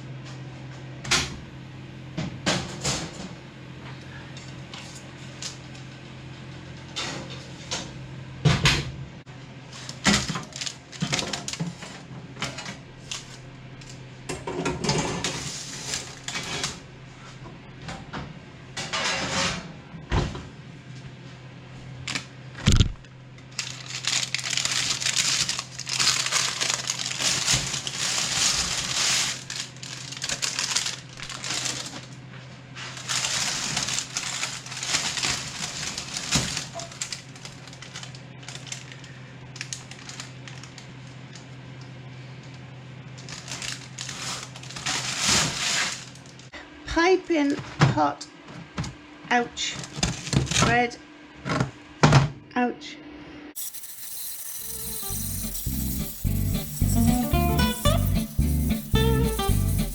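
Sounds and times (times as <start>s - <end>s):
hissy noise: 53.6s - 59.9s
low hum: 53.6s - 59.9s.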